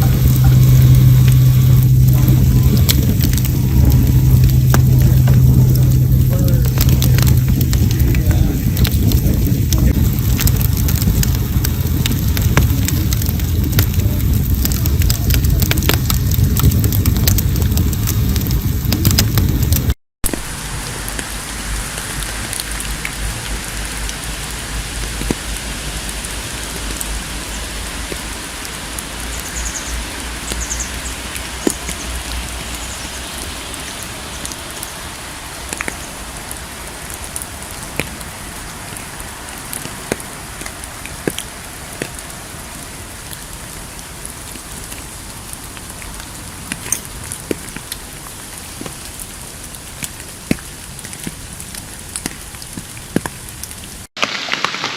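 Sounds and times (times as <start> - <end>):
low rumble: 0.0 - 42.9
firewood crackling and popping: 0.0 - 54.9
steady rain hiss: 0.0 - 54.9.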